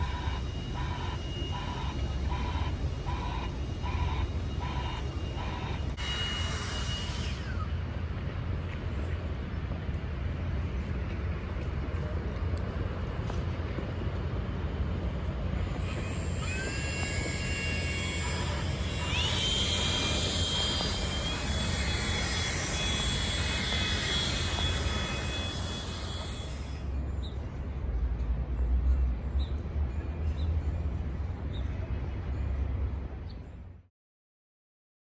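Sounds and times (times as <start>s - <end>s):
high whining tones: 0.0s - 7.9s, 15.7s - 26.9s
train rumbling: 0.0s - 29.0s.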